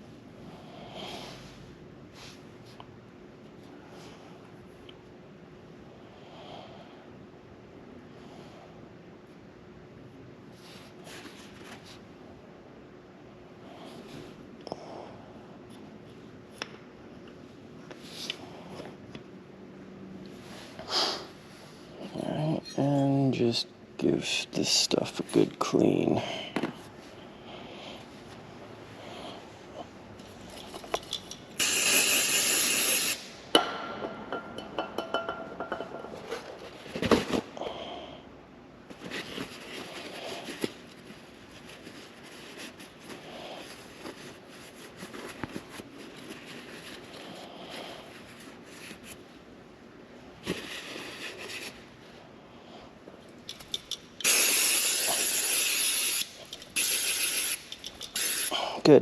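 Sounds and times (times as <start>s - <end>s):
aerosol spray hissing: 31.6s - 33.2s, 54.2s - 57.6s, 58.2s - 58.5s.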